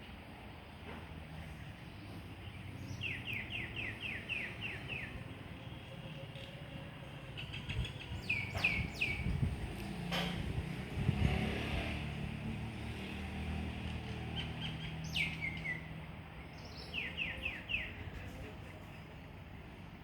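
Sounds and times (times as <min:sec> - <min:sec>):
bird chirping: 0:07.3 - 0:09.5, 0:14.1 - 0:18.1.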